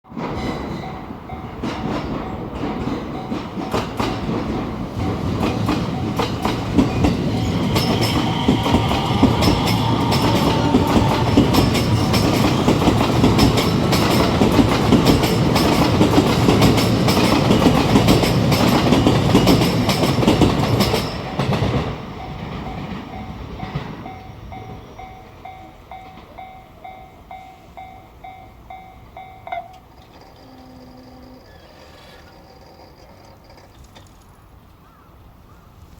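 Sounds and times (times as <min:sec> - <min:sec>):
train wheels clacking over rail joints: 0:00.1 - 0:27.0
level crossing warning bell: 0:00.1 - 0:33.5.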